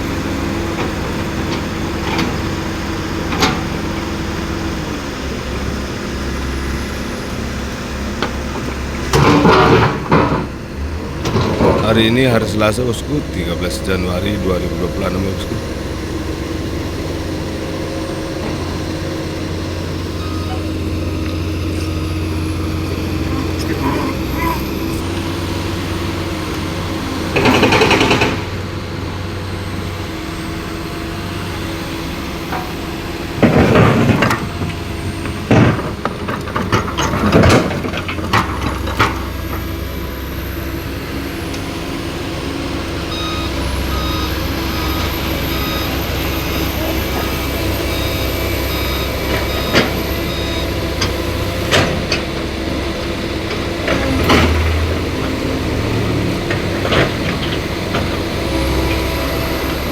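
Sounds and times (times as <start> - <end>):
heavy diesel trucks running: 0.0 - 59.9
reversing beeper: 11.6 - 15.8, 20.0 - 25.1, 42.8 - 51.7.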